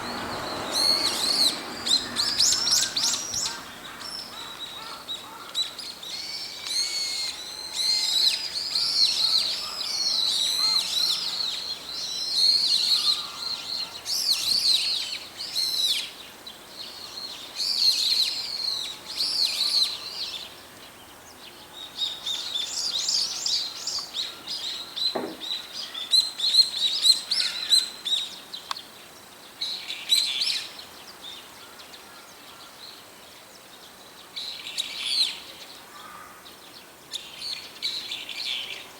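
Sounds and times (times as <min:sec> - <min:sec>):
birds calling: 0:00.0 - 0:15.0.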